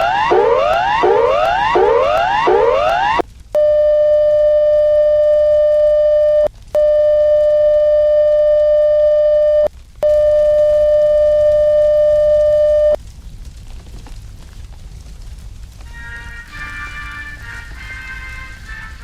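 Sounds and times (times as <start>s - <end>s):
buzzy emergency alert tone: 0.0s - 3.2s.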